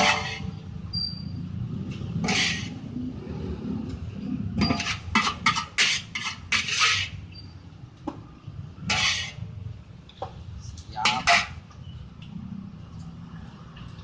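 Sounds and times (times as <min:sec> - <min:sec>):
metal utensil scraping cookware: 0:00.0 - 0:00.7, 0:01.9 - 0:02.9, 0:04.5 - 0:07.4, 0:08.8 - 0:09.6, 0:11.0 - 0:11.6.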